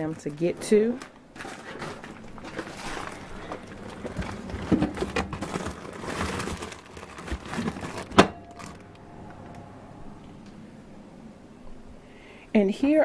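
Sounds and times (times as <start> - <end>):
plastic bags crinkling: 0.0 - 9.0.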